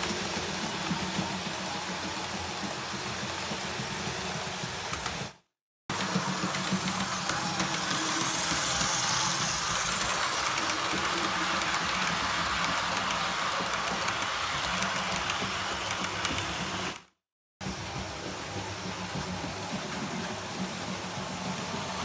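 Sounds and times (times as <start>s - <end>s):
model train motor whirring: 6.0s - 17.1s.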